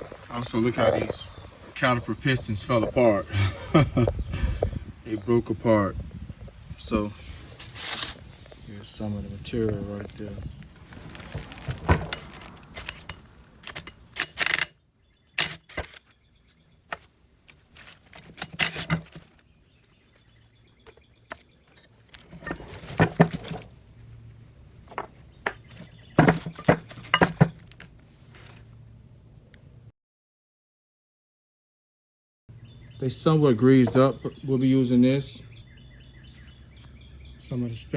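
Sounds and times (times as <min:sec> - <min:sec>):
metallic clinks and clatters: 0:13.6 - 0:14.7.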